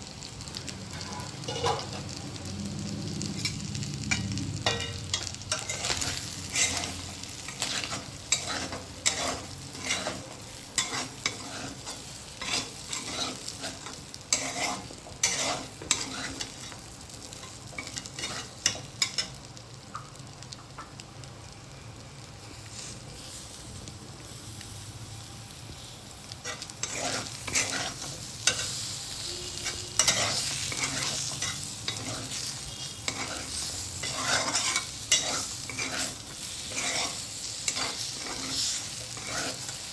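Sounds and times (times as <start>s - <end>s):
chicken sizzling in oil: 0.0s - 39.9s
spatula scraping a pan: 0.9s - 2.0s, 4.7s - 16.8s, 17.7s - 19.3s, 26.4s - 39.9s.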